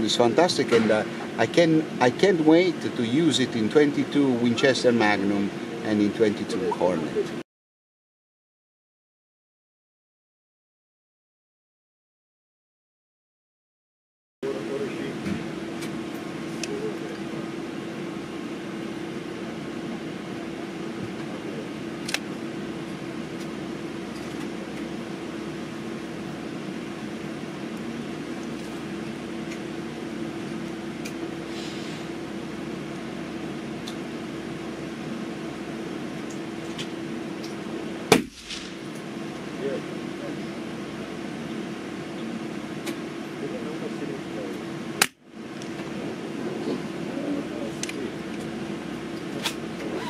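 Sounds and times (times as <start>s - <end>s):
steady mechanical hum: 0.0s - 7.4s, 14.4s - 50.0s
loud sharp crack: 38.1s - 39.0s.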